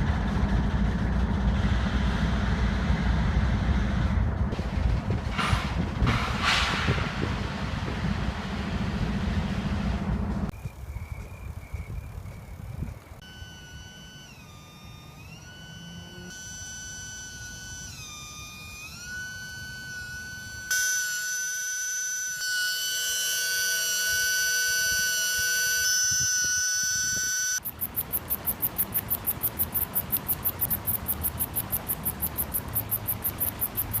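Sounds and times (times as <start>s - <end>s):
low hum: 0.0s - 34.0s
high whistling tone: 10.5s - 34.0s
cricket chirping: 10.6s - 34.0s.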